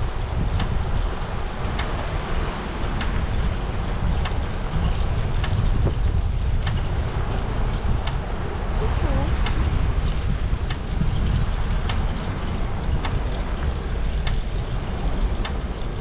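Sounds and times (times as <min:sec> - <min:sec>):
wind buffeting microphone: 0:00.0 - 0:16.0
faint ticks: 0:00.3 - 0:08.4, 0:09.3 - 0:16.0.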